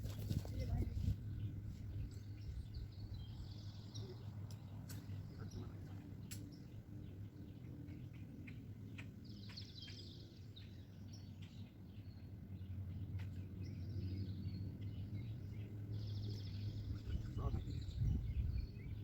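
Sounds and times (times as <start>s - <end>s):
small birds chirping: 0.0s - 19.0s
steady low rumble: 12.8s - 19.0s.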